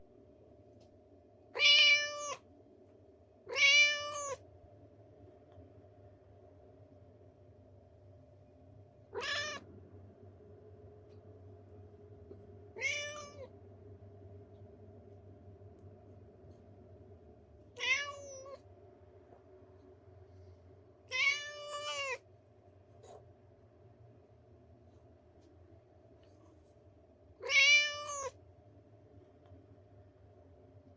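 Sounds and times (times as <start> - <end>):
faint background hum: 0.0 - 30.9
cat meowing: 1.6 - 2.4, 3.5 - 4.4, 9.1 - 9.6, 12.8 - 13.5, 17.8 - 18.6, 21.1 - 22.2, 27.4 - 28.4.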